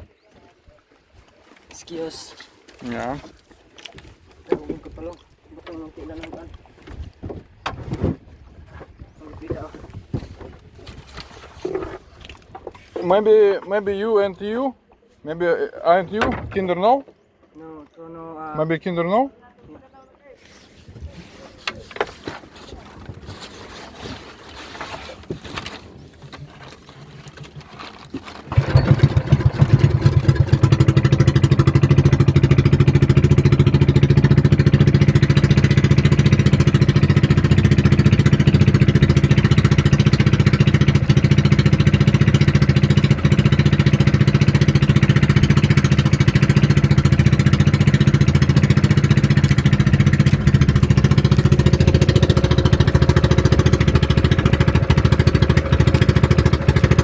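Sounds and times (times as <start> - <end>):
boat engine running: 25.6 - 57.0.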